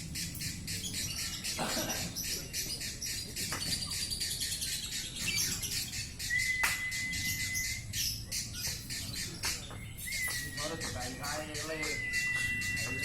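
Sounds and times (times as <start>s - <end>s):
long level whistle: 6.3s - 7.8s, 10.1s - 13.0s.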